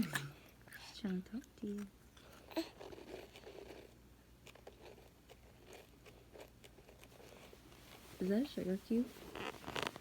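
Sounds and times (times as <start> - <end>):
child chewing sugar cube: 0.0 - 8.0.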